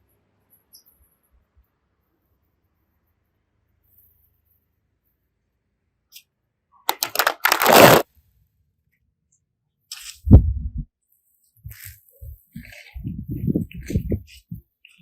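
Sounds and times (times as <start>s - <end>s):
sharp clicks: 6.9s - 8.0s
crackling tearing noise: 6.9s - 8.1s.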